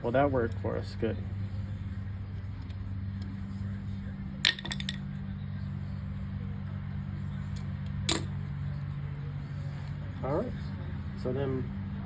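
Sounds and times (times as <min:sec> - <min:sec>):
steady low hum: 0:00.0 - 0:12.0
metallic clink: 0:07.6 - 0:08.4.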